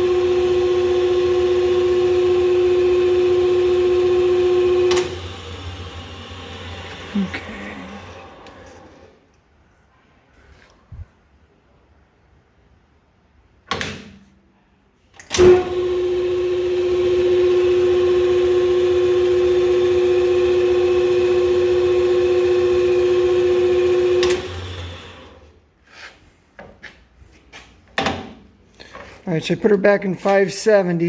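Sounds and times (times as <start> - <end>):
lathe gear whine: 0.0 - 9.1, 15.4 - 25.5.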